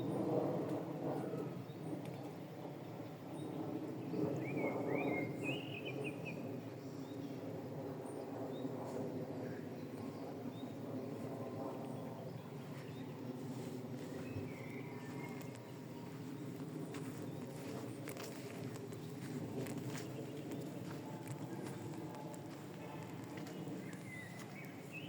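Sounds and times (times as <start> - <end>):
low background noise: 0.1 - 25.0
songbird chirping: 13.6 - 25.0.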